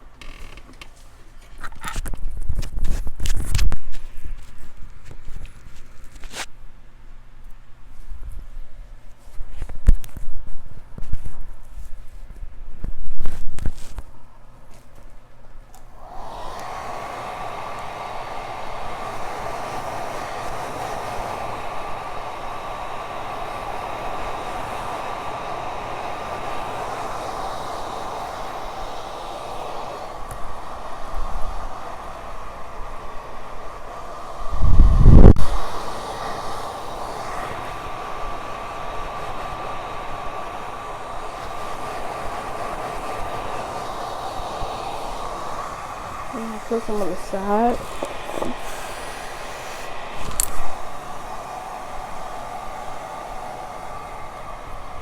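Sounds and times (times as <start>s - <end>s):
hair dryer blowing: 0.0s - 1.3s, 15.8s - 55.0s
small electric motor whirring: 34.2s - 55.0s.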